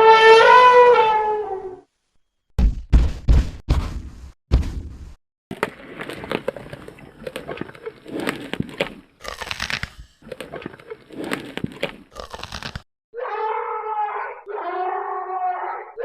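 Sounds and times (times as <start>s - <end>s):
crackling crunching noise: 5.5s - 12.9s.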